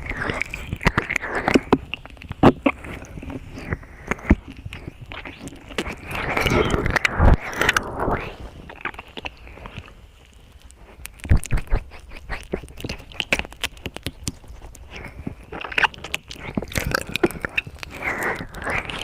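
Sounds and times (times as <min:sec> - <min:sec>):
wet mouth clicks and smacks: 0:00.0 - 0:07.9, 0:08.7 - 0:09.9, 0:11.0 - 0:19.0
breathing: 0:14.8 - 0:15.5, 0:16.9 - 0:19.0.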